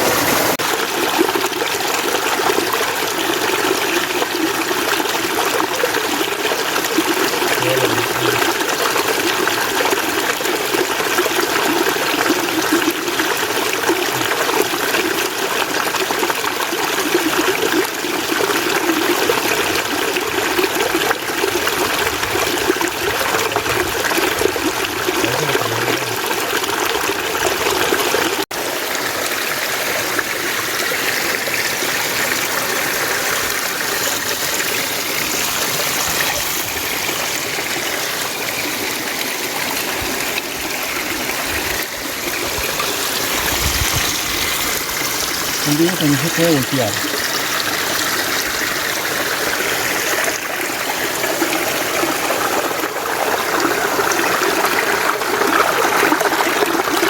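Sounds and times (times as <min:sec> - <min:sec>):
mountain stream flowing: 0:00.0 - 0:57.0.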